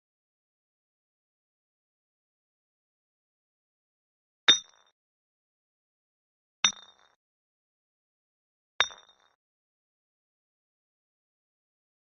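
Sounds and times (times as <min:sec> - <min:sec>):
glass bottle clinking: 0:08.8 - 0:09.4.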